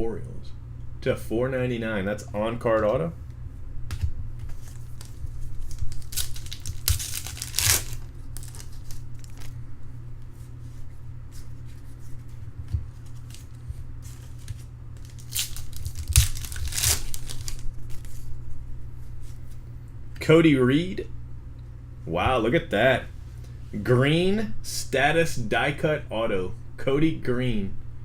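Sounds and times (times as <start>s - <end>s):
steady low hum: 0.0s - 28.0s
wrapper being torn and crinkled: 4.6s - 9.6s, 14.2s - 18.1s.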